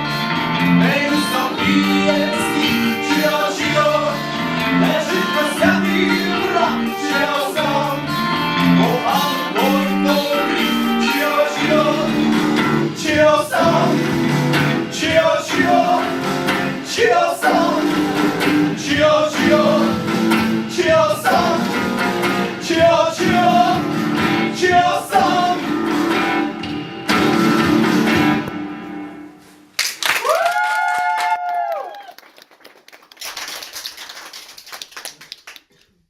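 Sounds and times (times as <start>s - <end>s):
person singing: 0.0s - 26.1s
strummed acoustic guitar: 0.0s - 29.5s.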